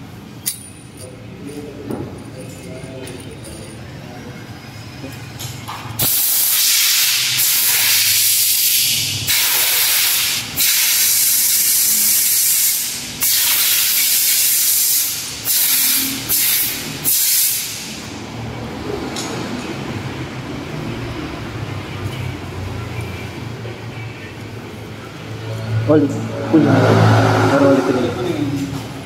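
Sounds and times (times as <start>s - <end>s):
compressed air blow gun hissing: 6.0s - 18.0s.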